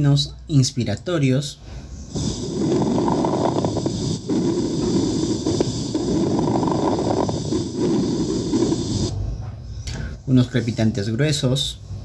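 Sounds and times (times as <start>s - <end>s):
breath noise through stethoscope: 1.6s - 10.3s.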